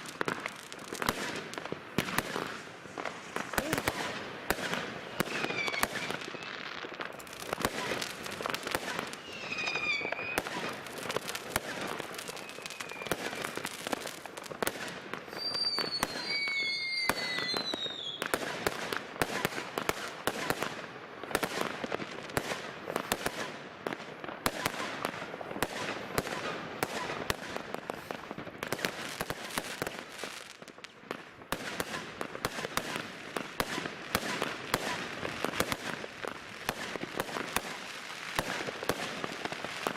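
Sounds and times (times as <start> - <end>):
fireworks bangs and crackles: 0.0 - 39.9
falling firework whistles: 2.2 - 14.2, 15.1 - 18.4, 24.4 - 28.2.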